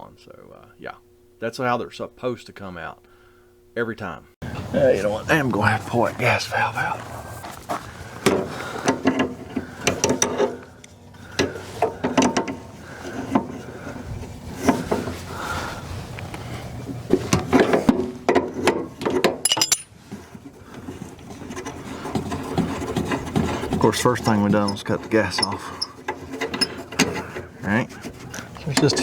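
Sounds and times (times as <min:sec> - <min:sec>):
metal parts clinking and knocking: 0:19.1 - 0:20.0.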